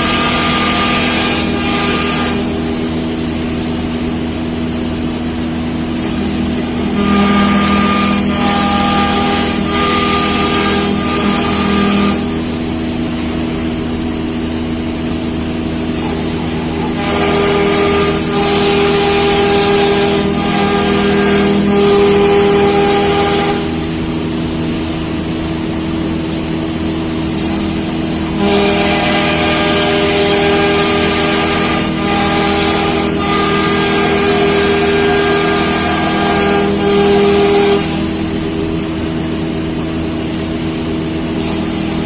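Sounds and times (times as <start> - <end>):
router spindle whine: 0.0 - 42.0
hiss of cutting: 5.9 - 12.5, 15.9 - 24.5.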